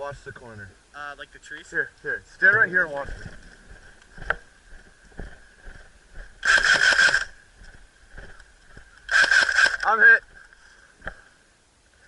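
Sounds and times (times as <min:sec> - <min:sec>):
airsoft gun full-auto burst: 0:06.4 - 0:07.3, 0:09.1 - 0:10.0.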